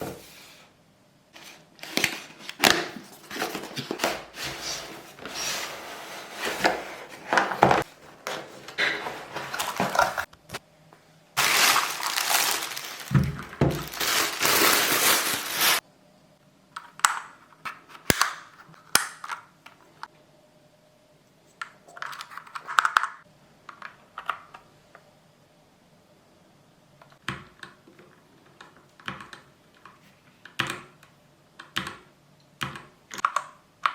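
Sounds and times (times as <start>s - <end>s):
packaging crinkling: 6.2s - 10.3s, 11.4s - 15.8s.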